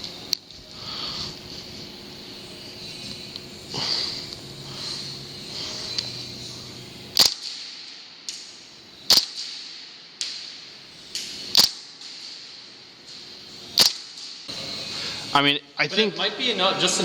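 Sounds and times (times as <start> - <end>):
airsoft gun shots: 7.1 - 14.5.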